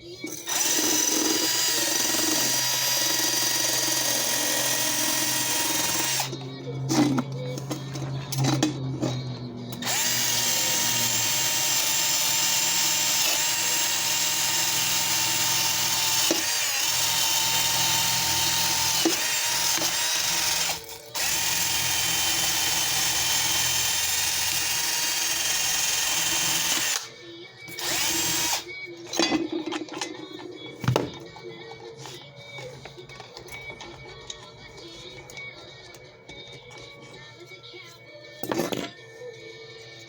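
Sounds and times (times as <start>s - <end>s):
electric drill polishing metal: 0.3s - 6.4s, 9.7s - 27.1s, 27.8s - 28.7s.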